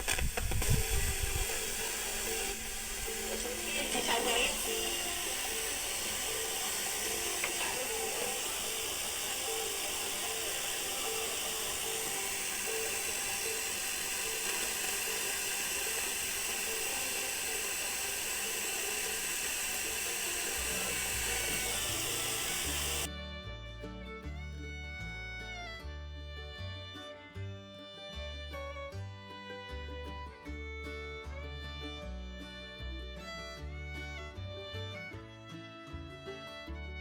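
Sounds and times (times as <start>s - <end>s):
radio static hiss: 0.0s - 23.1s
background music with violin: 0.0s - 37.0s.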